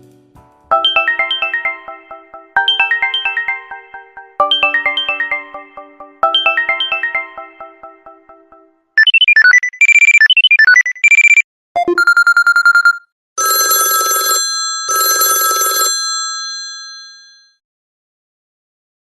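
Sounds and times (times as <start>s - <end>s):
trilling electronic ringtone: 0.7s - 8.2s, 9.0s - 17.6s
old-style telephone bell ringing: 12.1s - 17.6s.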